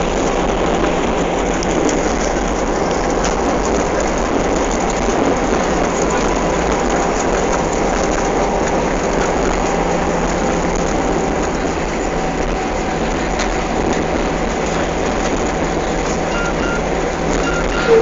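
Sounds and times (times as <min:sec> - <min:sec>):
airliner engine and wheel rumble: 0:00.0 - 0:18.0
faint steady tones: 0:16.1 - 0:18.0.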